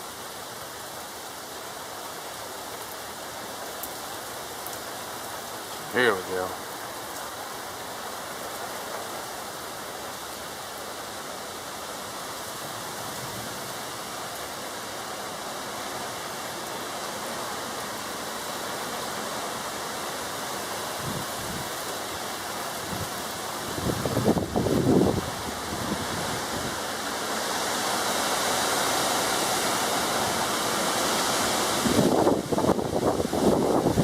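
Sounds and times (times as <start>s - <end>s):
rain: 0.0s - 34.0s
strong wind: 20.8s - 34.0s.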